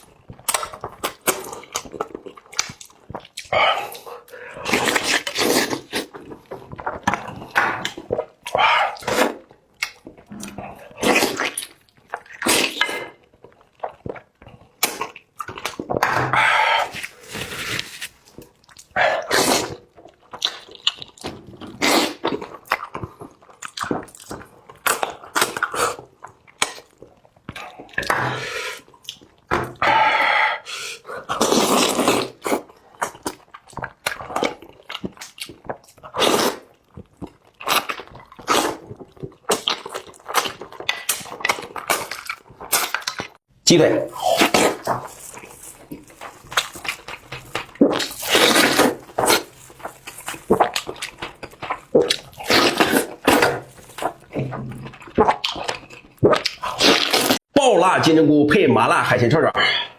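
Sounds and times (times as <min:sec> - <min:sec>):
wet chewing and smacking: 0:00.0 - 0:30.0, 0:31.1 - 0:43.5, 0:44.1 - 0:57.5
slurping: 0:03.4 - 0:13.2, 0:15.6 - 0:19.8, 0:29.8 - 0:32.7, 0:37.7 - 0:57.4.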